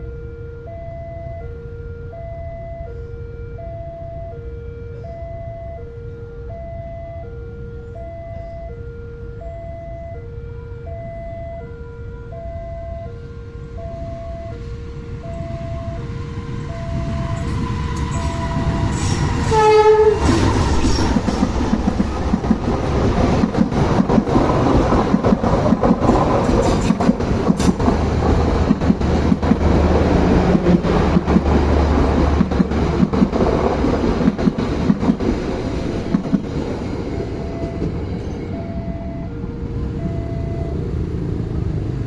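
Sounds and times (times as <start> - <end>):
train horn blast: 0.0 - 27.0
two-note electronic warning tone: 3.6 - 26.9, 31.6 - 41.0
train wheels clacking on rails: 9.3 - 39.1.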